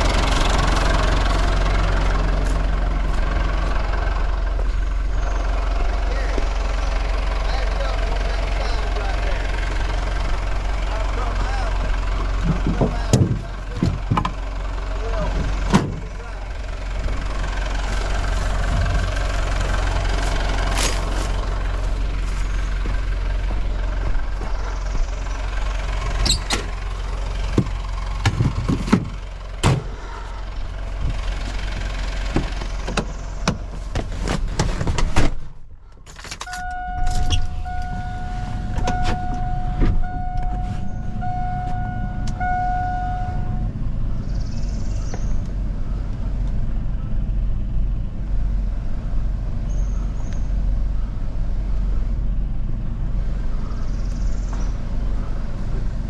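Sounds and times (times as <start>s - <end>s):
vehicle engine rumbling: 0.0s - 56.0s
knocks and rattles: 12.2s - 14.5s, 27.4s - 29.9s, 31.0s - 37.6s
electronic warning beeper: 36.4s - 43.7s.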